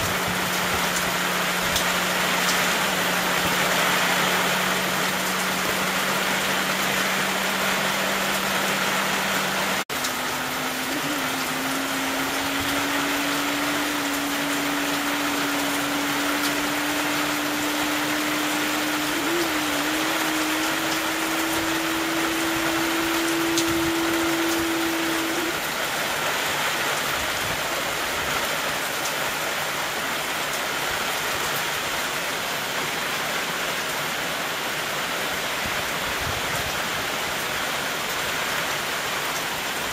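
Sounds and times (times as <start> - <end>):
low hum: 0.0 - 25.7
hum rising in pitch: 0.0 - 25.8
heavy rain falling: 0.0 - 39.9.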